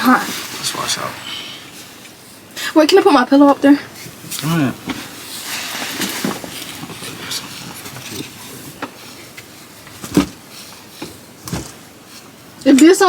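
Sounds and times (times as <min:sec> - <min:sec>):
boxes rustling on a shelf: 0:03.9 - 0:12.4.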